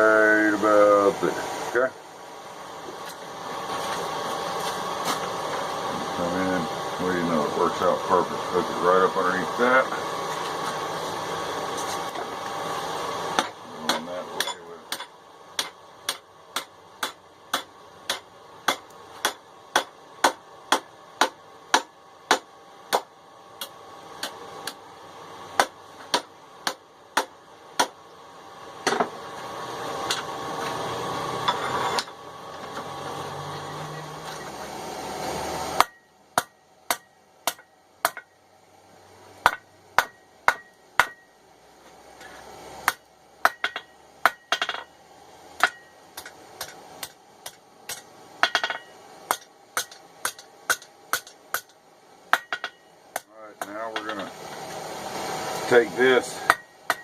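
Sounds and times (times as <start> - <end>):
steady background noise: 0.0 - 57.0
hammer striking steel on anvil: 13.3 - 24.8, 35.8 - 38.3, 39.4 - 41.3, 42.2 - 44.9, 45.6 - 54.3, 56.4 - 57.0.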